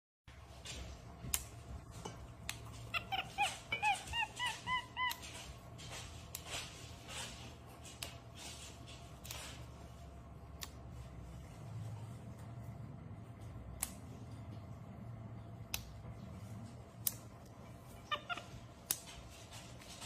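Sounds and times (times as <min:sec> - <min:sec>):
sharp snaps and clicks: 0:01.2 - 0:01.7, 0:02.4 - 0:06.7, 0:07.8 - 0:08.6, 0:10.5 - 0:11.0, 0:13.7 - 0:14.2, 0:15.6 - 0:16.3, 0:16.9 - 0:17.6, 0:18.4 - 0:19.5
monkey chirping: 0:02.7 - 0:05.5, 0:18.0 - 0:18.6.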